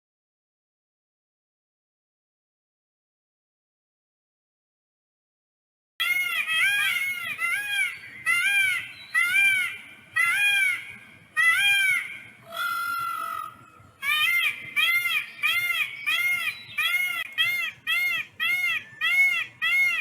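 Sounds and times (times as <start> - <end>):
peacock calling: 6.0 - 20.0.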